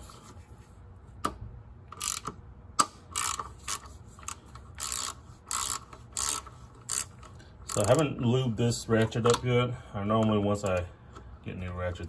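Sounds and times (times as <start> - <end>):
hand ratchet clicking: 1.9 - 8.1.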